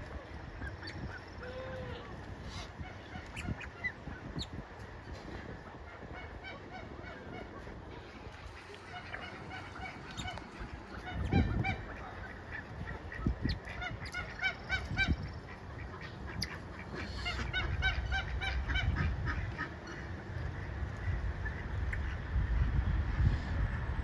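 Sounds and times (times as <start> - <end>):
farm fowl calling: 0.6 - 4.4, 5.8 - 20.0.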